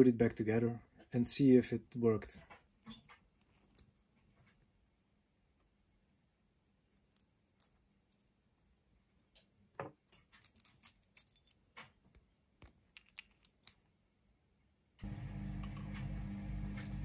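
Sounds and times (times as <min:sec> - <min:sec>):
small metal parts clicking: 0:07.1 - 0:08.3, 0:10.1 - 0:11.8, 0:12.6 - 0:13.8.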